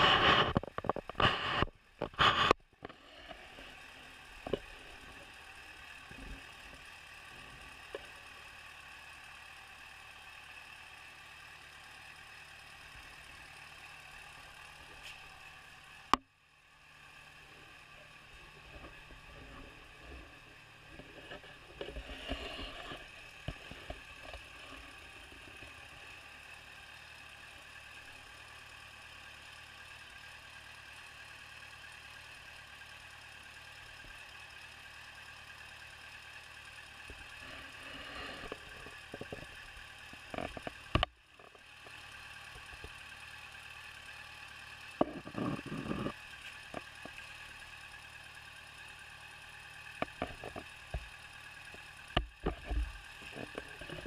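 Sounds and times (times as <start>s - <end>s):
clatters: 0.0s - 9.4s, 17.0s - 30.8s, 35.5s - 48.4s, 49.4s - 54.0s
engine knock: 0.0s - 54.0s
motorcycle engine idling: 0.0s - 54.0s.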